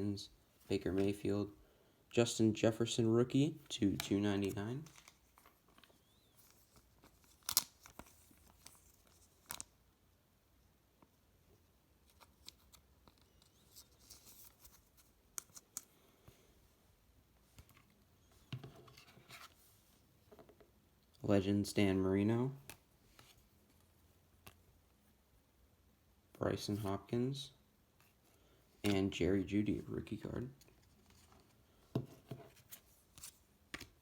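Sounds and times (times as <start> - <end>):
trading cards sliding and crinkling: 4.0 - 9.6, 12.0 - 16.4, 17.5 - 20.0, 30.7 - 34.0.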